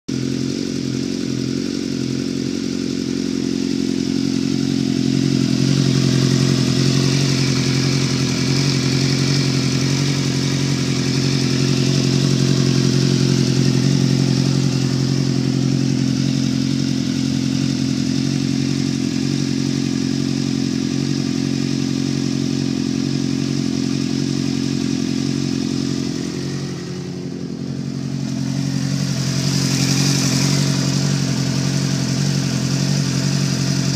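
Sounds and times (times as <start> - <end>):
motorcycle engine running: 0.0 - 33.9.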